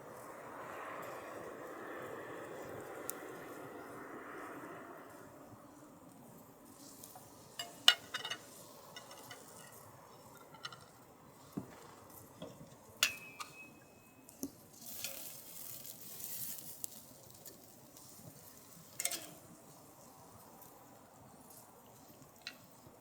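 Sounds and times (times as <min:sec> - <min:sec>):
dishes and cutlery clinking: 0:07.1 - 0:14.1, 0:19.0 - 0:19.5.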